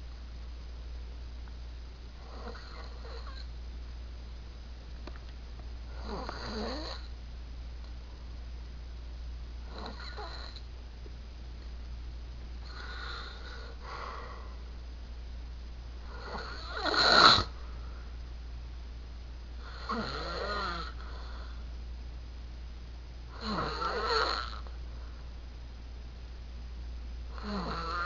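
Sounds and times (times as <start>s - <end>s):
man snoring loudly: 2.2s - 3.4s, 5.9s - 7.1s, 9.7s - 10.6s, 12.6s - 13.7s, 16.1s - 17.6s, 19.6s - 21.4s, 23.3s - 24.6s, 27.3s - 28.0s.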